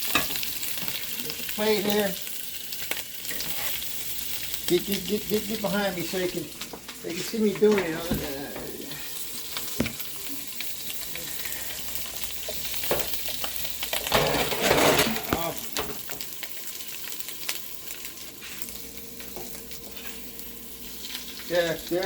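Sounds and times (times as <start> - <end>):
mushrooms sizzling in butter: 0.0 - 22.0.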